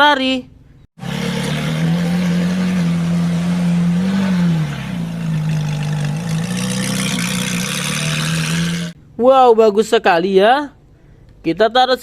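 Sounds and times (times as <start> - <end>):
car engine running: 1.0 - 9.2.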